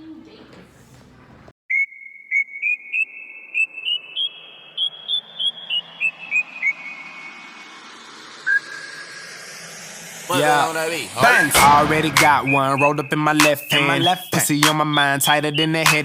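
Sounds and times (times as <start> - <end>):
whistled tune: 1.7 - 7.7, 11.2 - 16.0.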